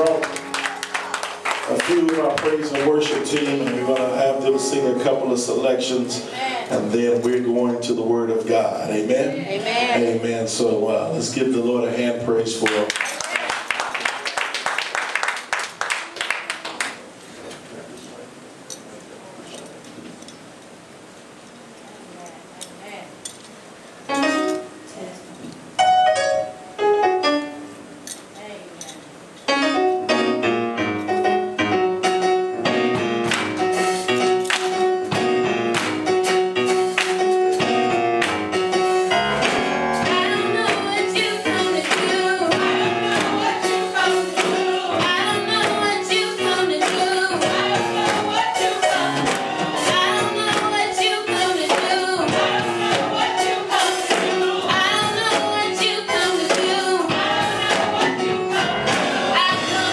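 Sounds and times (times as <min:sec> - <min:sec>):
band playing: 0:00.0 - 0:12.4, 0:24.1 - 0:24.9, 0:29.5 - 0:59.9
percussion steady beat: 0:32.0 - 0:59.9
worship team singing: 0:39.3 - 0:59.9.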